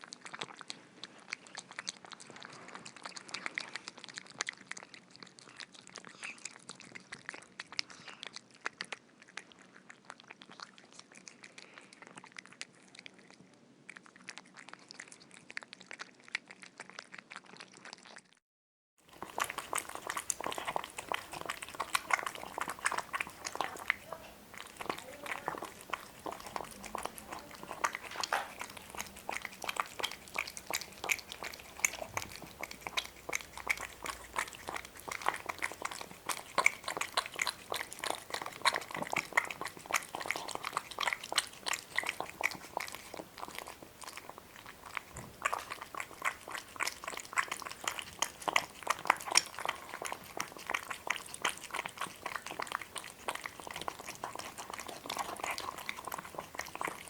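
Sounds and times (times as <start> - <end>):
animal chewing and smacking: 0.0 - 18.4, 19.0 - 57.0.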